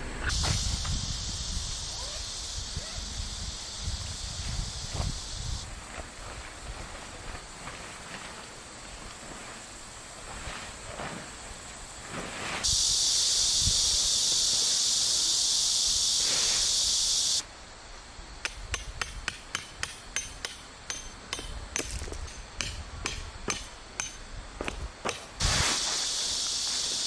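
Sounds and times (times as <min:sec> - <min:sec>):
loud high-pitched hiss: 0:00.2 - 0:05.7, 0:12.6 - 0:27.0
ringing metallic taps: 0:18.5 - 0:25.4.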